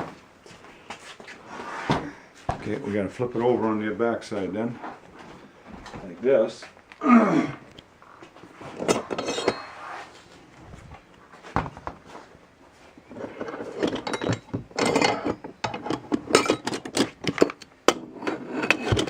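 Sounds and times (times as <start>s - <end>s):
metal hardware clinking and rattling: 8.8s - 9.9s, 13.2s - 19.0s.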